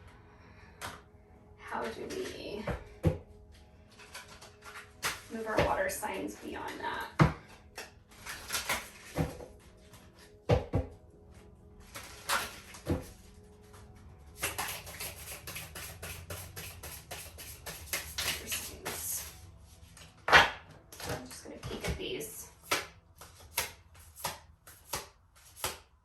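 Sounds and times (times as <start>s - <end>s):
soft background music: 0.0s - 25.3s
cards being shuffled: 3.5s - 5.7s, 7.4s - 10.4s, 11.8s - 25.9s
taps and knocks on cards: 22.6s - 25.9s.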